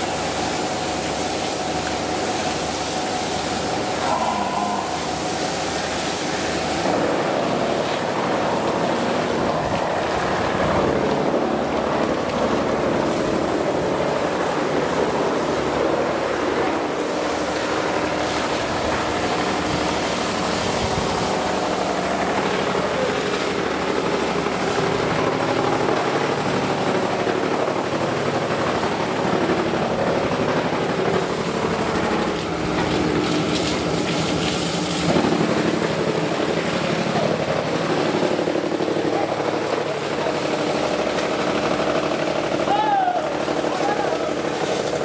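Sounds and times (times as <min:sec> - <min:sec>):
machinery drone: 0:02.1 - 0:33.3.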